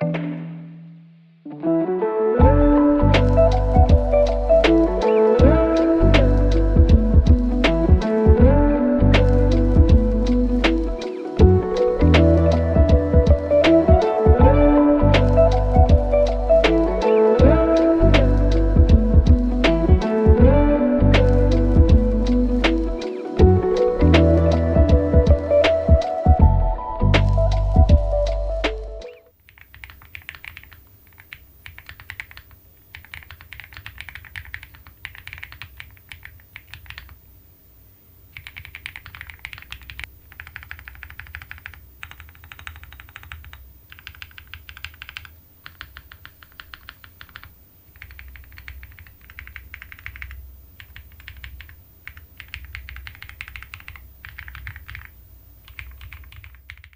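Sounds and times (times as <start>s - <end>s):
mechanical keyboard typing: 29.4s - 37.2s, 38.4s - 56.9s.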